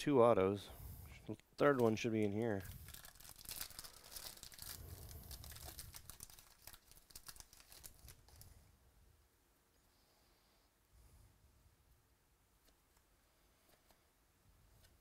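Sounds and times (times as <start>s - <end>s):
foil wrapper crinkling and tearing: 2.4s - 8.4s.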